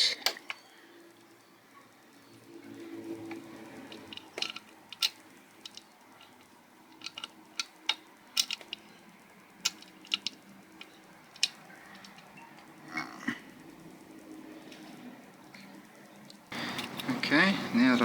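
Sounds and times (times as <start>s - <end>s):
hand tool clicking on metal: 3.3s - 12.8s.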